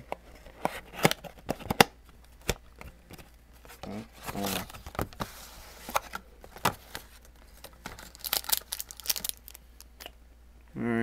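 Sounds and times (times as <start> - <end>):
sharp clicks and crinkles: 5.9 - 10.1
box wrapping being torn open: 8.0 - 9.6.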